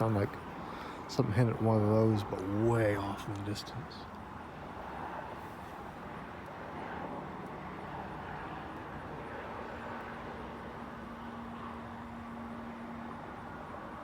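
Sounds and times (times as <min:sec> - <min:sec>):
distant highway traffic: 0:00.0 - 0:14.0.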